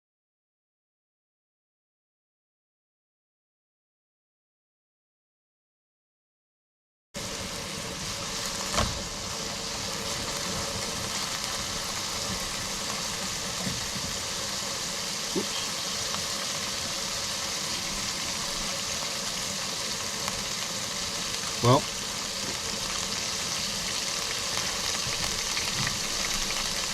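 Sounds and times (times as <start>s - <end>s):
food sizzling in a pan: 7.2s - 26.9s.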